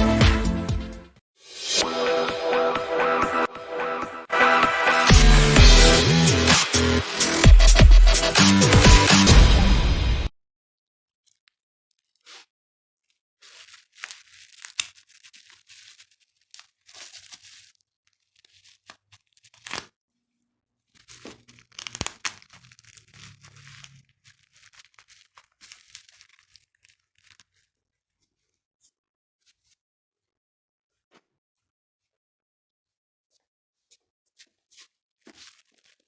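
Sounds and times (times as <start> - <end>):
packaging tearing and crinkling: 11.3 - 20.0, 20.9 - 27.8, 35.3 - 36.0.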